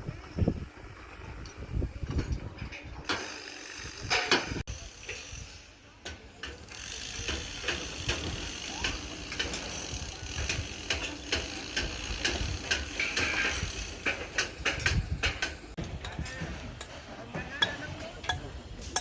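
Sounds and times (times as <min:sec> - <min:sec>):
clicks and clinks on rebar: 0:06.0 - 0:19.0.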